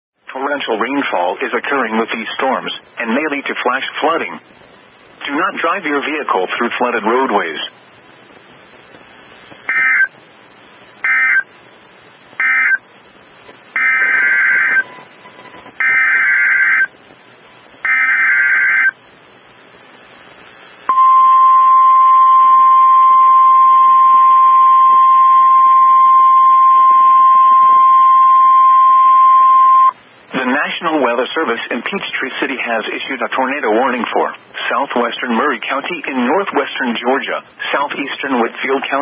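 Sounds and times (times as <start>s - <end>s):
long steady attention tone: 0.2s - 31.5s
buzzy data burst chirps: 9.7s - 10.1s, 10.9s - 11.5s, 12.4s - 12.8s.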